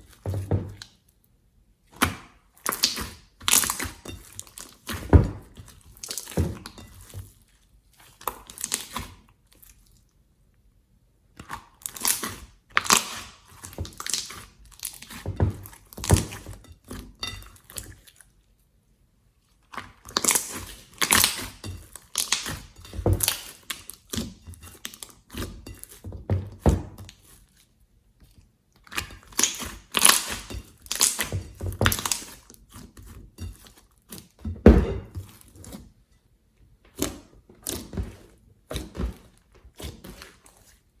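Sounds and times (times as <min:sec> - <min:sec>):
slime squelching and crackling: 0:02.6 - 0:10.0, 0:11.4 - 0:16.5, 0:19.6 - 0:26.0, 0:28.8 - 0:34.3.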